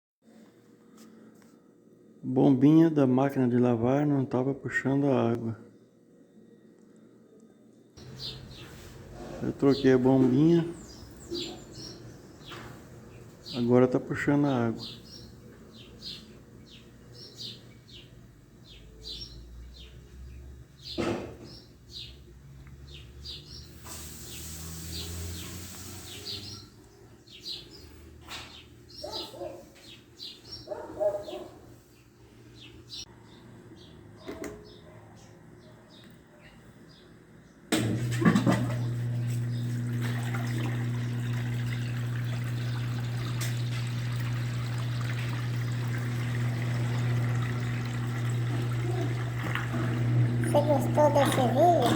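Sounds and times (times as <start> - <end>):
drain pump humming: 8.0 - 18.2, 23.6 - 26.8, 37.7 - 51.9
birds chirping: 8.0 - 37.7, 38.8 - 51.9
water rushing out: 39.8 - 51.9.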